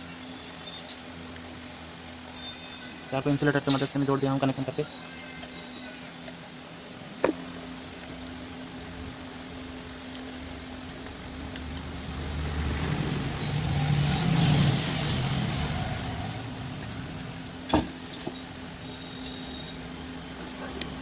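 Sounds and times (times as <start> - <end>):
vehicle passing by: 11.7 - 17.6.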